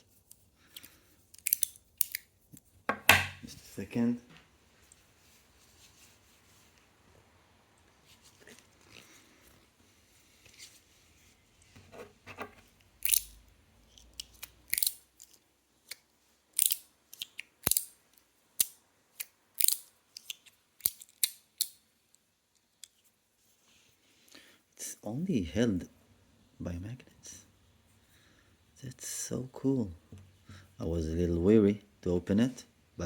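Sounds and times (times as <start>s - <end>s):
metal slider clicks and snaps: 1.4s - 2.2s, 14.0s - 15.3s, 16.6s - 17.9s, 18.6s - 21.8s
faint rustling: 3.4s - 12.8s.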